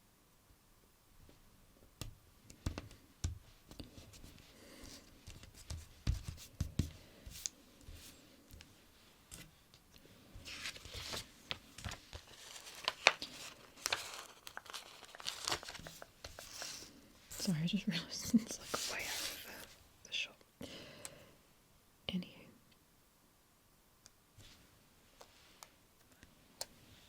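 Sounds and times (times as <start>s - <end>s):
sticker clicks and taps: 2.0s - 3.4s.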